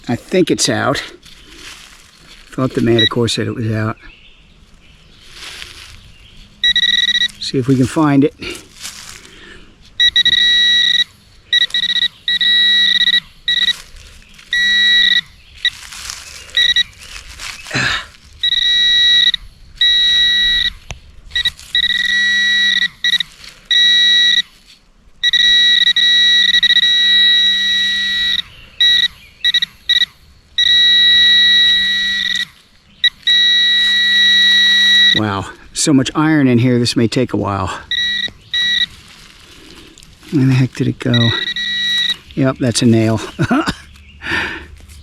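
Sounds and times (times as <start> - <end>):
soil scraping: 0.0 - 3.3, 5.2 - 11.0, 11.6 - 18.6, 37.6 - 43.6
metal detector buzzing tone: 2.8 - 3.2, 6.6 - 8.0, 10.0 - 17.0, 18.4 - 24.6, 25.2 - 35.4, 37.9 - 39.0, 39.7 - 42.5.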